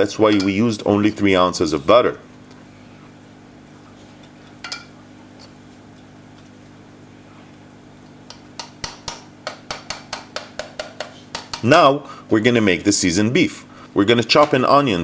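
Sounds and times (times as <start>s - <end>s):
low kitchen hum: 0.0s - 15.0s
knife chopping on cutting board: 8.6s - 11.7s.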